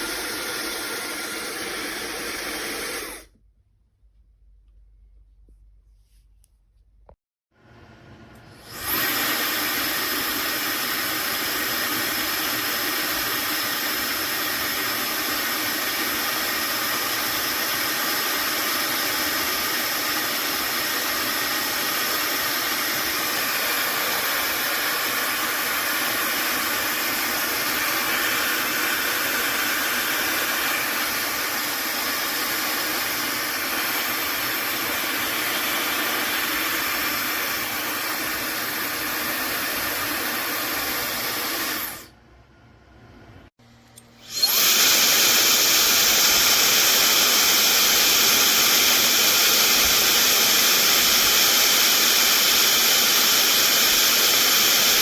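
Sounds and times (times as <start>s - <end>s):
hair dryer running: 0.0s - 3.3s, 8.5s - 42.1s, 44.2s - 55.0s.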